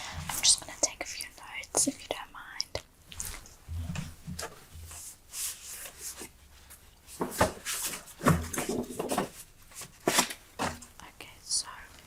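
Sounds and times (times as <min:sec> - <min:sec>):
rubbing and handling sounds: 0:03.1 - 0:10.9.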